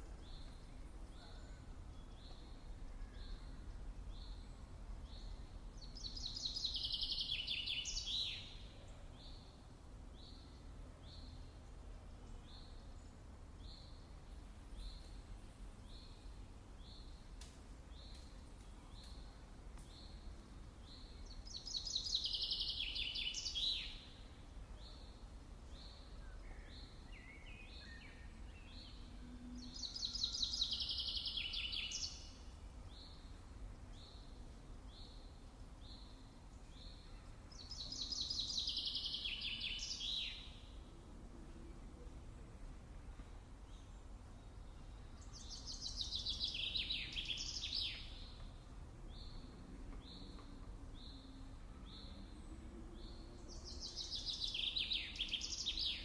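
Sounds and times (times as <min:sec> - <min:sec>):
steady low background noise: 0:00.0 - 0:56.0
bird singing loud song phrase: 0:00.1 - 0:09.6, 0:19.9 - 0:40.8, 0:43.7 - 0:48.4, 0:49.1 - 0:56.0.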